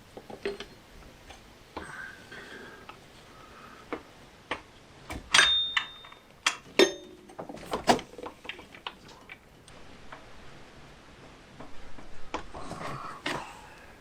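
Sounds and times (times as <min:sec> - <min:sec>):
metal hand tools clinking: 0:05.1 - 0:07.4.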